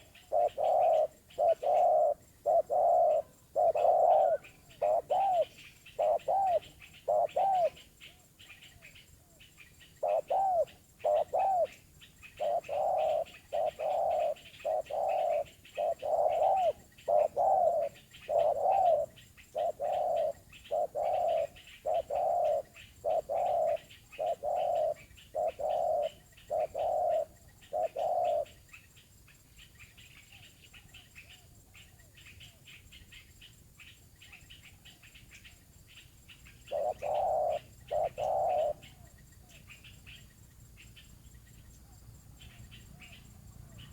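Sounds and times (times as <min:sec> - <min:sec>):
dove cooing: 0:00.0 - 0:28.6, 0:36.4 - 0:40.1
small birds chirping faintly: 0:00.0 - 0:43.9.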